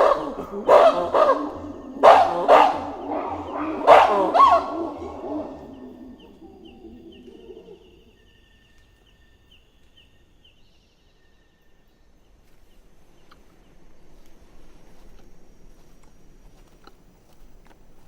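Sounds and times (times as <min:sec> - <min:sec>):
low animal call: 0:00.0 - 0:08.2
forest background sound: 0:00.0 - 0:18.0.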